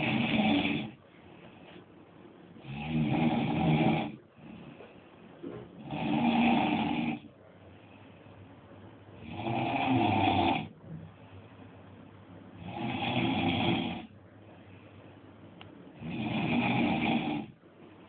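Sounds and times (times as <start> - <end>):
person snoring loudly: 0.0 - 1.0, 2.6 - 4.2, 5.8 - 7.3, 9.2 - 10.7, 12.6 - 14.1, 16.0 - 17.6.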